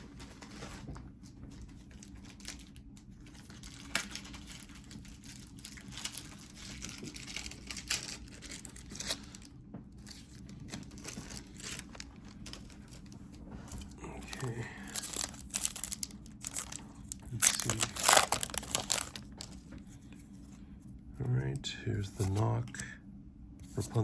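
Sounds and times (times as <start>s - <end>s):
foil wrapper crinkling and tearing: 1.5s - 20.0s.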